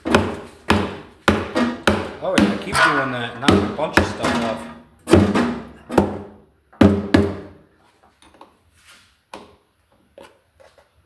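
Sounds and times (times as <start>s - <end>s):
mallet striking metal terminal: 0.7s - 6.3s.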